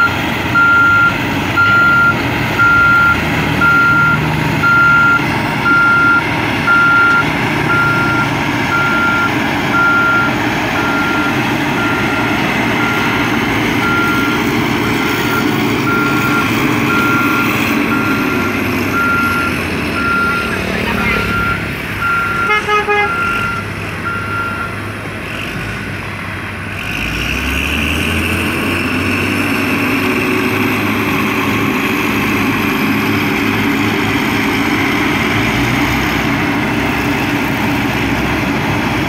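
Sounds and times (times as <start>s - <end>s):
reversing alarm beeping: 0.0s - 24.8s
diesel engine running: 0.0s - 39.0s
short horn toot: 22.4s - 23.2s.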